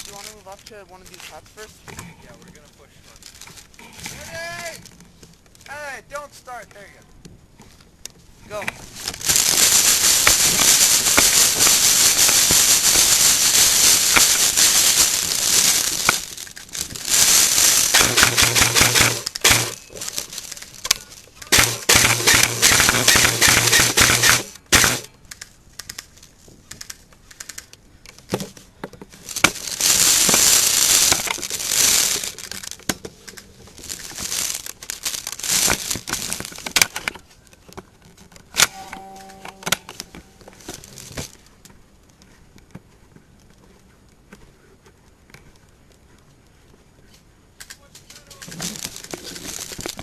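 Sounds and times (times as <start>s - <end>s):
rustling handling noise: 0.0s - 50.0s
sharp clicks: 17.8s - 28.3s.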